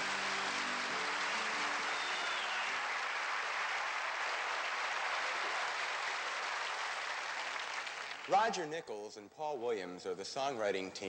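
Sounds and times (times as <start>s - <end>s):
audience applauding: 0.0s - 8.5s.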